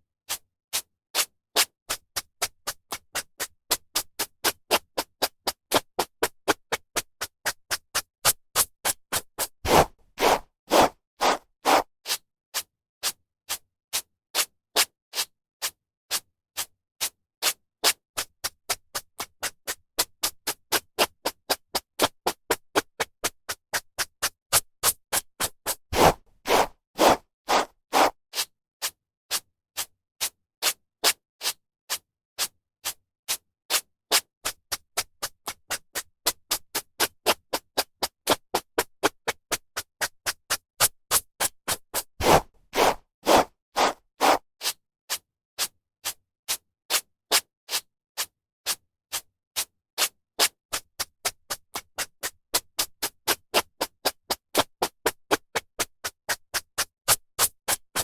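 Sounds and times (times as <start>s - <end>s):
hairbrush strokes through hair: 9.7s - 11.9s, 26.0s - 28.1s, 42.2s - 44.4s.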